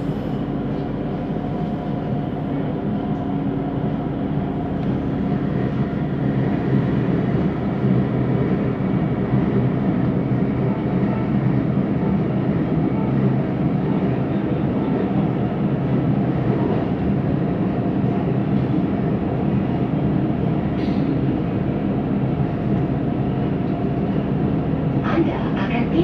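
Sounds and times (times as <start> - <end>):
train rolling rumble with hum: 0.0 - 26.0.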